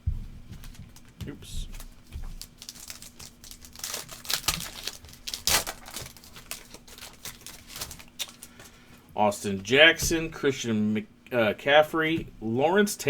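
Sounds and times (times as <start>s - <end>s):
wrapper crinkling and tearing: 1.8s - 8.7s.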